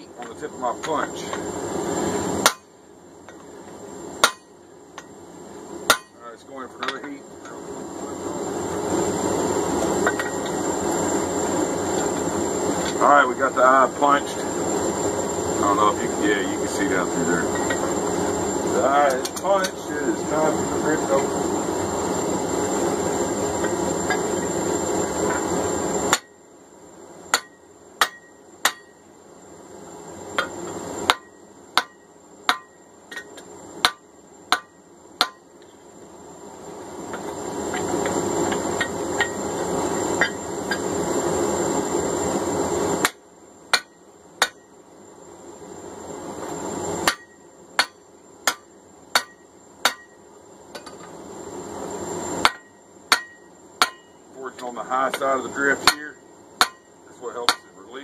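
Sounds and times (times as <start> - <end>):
hammer blows on hot steel: 0.0 - 5.2, 5.8 - 7.6, 23.6 - 26.4, 27.3 - 29.1, 30.3 - 35.5, 47.0 - 50.2, 52.4 - 58.0
steady rushing noise: 5.3 - 26.3, 36.3 - 43.2.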